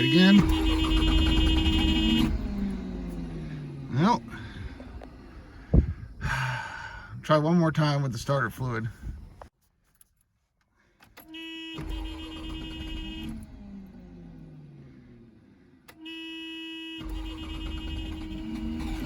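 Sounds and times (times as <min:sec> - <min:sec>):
engine cranking on starter: 0:00.0 - 0:07.0, 0:11.8 - 0:16.1, 0:17.0 - 0:19.0.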